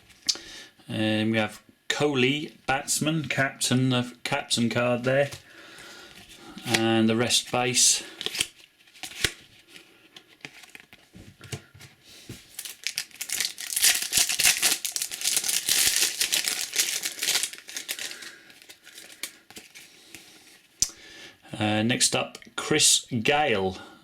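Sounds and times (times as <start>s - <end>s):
plastic wrapper tearing and crinkling: 12.5s - 19.9s.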